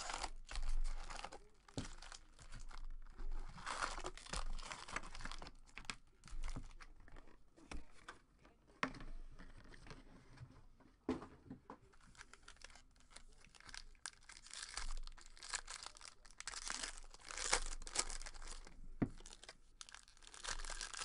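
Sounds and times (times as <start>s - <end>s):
packaging crinkling and tearing: 0.0s - 7.3s, 12.0s - 21.0s.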